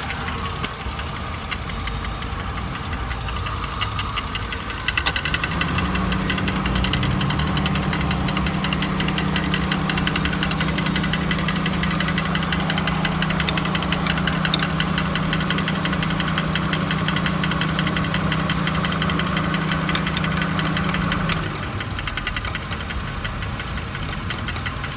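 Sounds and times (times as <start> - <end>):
car engine grinding and ticking: 0.0 - 24.9
steady hum: 7.1 - 21.5.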